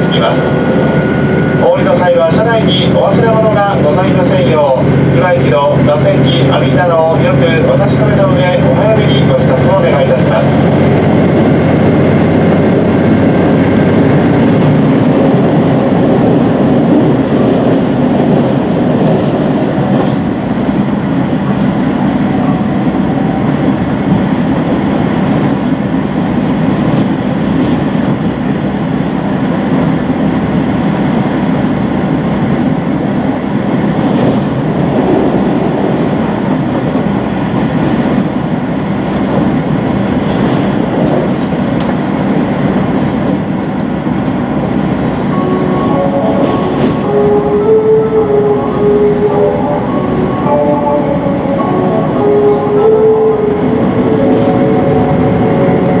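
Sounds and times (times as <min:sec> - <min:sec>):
diesel engine humming: 0:00.0 - 0:56.0
train wheels rumbling on rails: 0:00.0 - 0:56.0.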